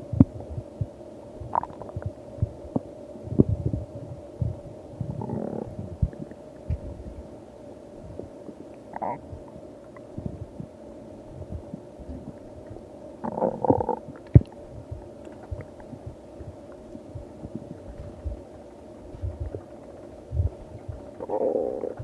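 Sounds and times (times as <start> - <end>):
faint steady hum: 0.0 - 22.0
stomach growling: 1.5 - 3.8, 4.4 - 7.0, 8.9 - 10.4, 13.2 - 22.0.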